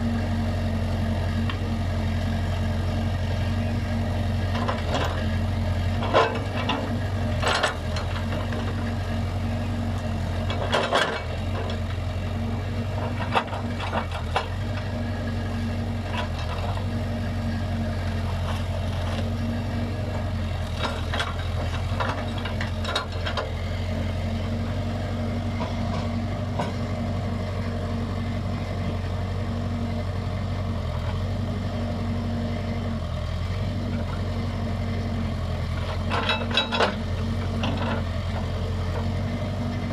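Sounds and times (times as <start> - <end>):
diesel engine running: 0.0 - 39.9
sharp clanks and knocks: 35.8 - 37.0.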